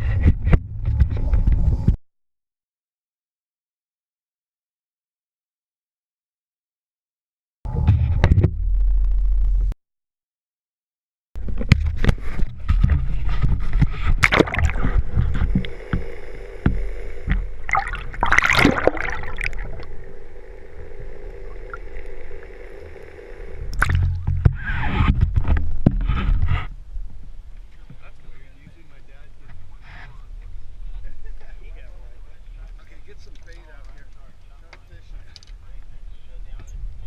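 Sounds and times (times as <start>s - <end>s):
low rumble: 7.7s - 9.8s, 11.4s - 27.8s
water splashing against boat: 12.9s - 16.1s, 16.7s - 20.2s, 23.7s - 24.4s.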